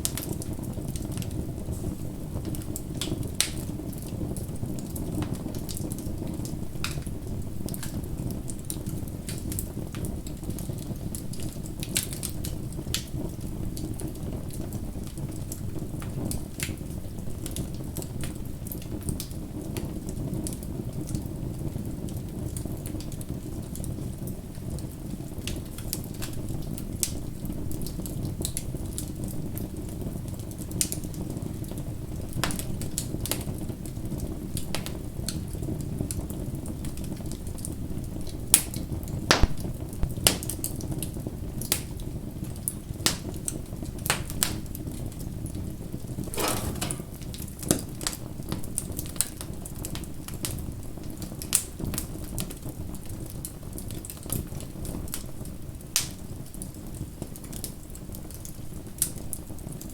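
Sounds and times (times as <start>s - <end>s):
bonfire crackling and popping: 0.0s - 45.6s, 46.2s - 59.9s
low rumble of flames: 0.0s - 59.9s.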